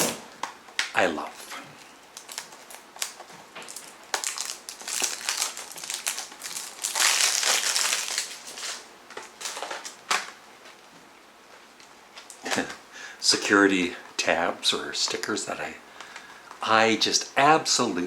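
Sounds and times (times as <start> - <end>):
plastic wrapping being torn off: 2.2 - 10.4.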